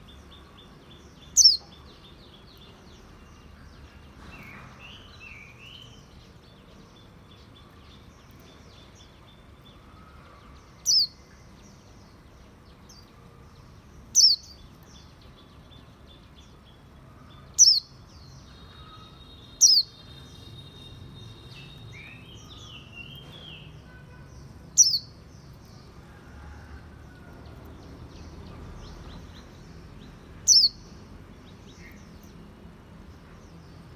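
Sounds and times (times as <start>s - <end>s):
birds warbling and chirping: 0.0s - 26.7s, 27.5s - 32.5s
songbird high downward call: 18.6s - 23.7s.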